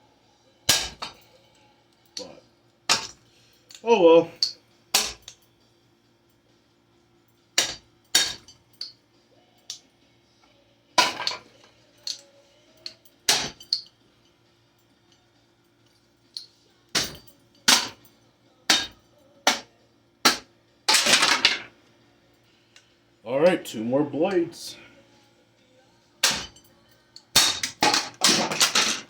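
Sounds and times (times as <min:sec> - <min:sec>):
ceiling fan struck and broken: 0:00.7 - 0:01.2, 0:17.0 - 0:18.1, 0:18.7 - 0:19.6, 0:26.2 - 0:26.7, 0:27.3 - 0:29.0.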